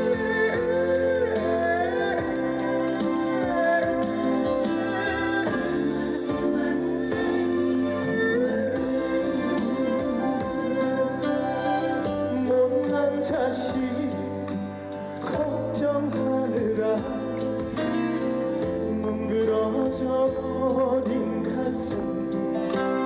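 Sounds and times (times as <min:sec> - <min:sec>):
slow ballad with guitar and strings: 0:00.0 - 0:23.0.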